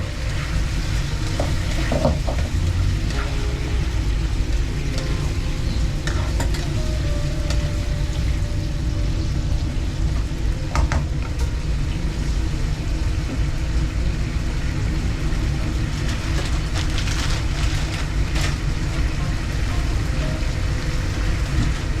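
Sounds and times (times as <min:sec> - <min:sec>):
storm wind rumbling: 0:00.0 - 0:22.0.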